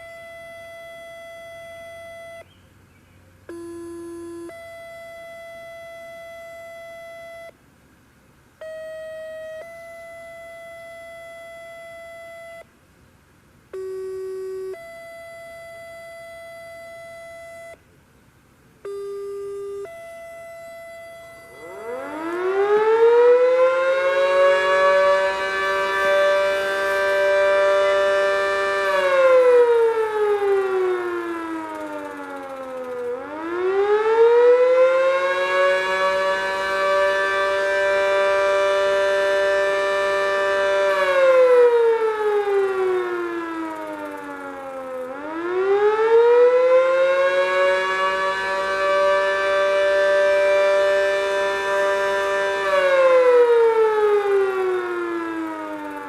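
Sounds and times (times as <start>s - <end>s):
two-tone fire siren winding: 0.0s - 2.4s, 8.6s - 12.6s, 18.9s - 56.0s.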